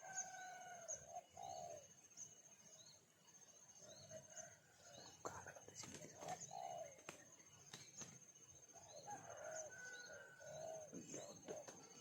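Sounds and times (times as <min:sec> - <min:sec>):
faint bird calls: 0:05.0 - 0:08.2, 0:09.0 - 0:12.0.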